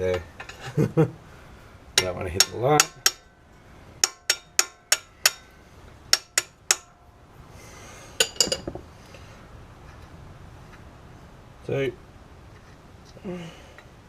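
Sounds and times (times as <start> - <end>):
hammer striking steel: 2.0 - 3.3, 4.0 - 7.0.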